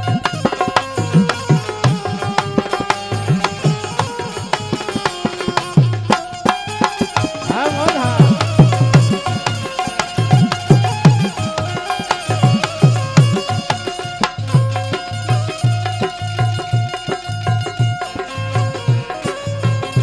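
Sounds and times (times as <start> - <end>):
tabla playing rhythm: 0.0 - 20.0
wavering pitched phrase: 7.4 - 9.0.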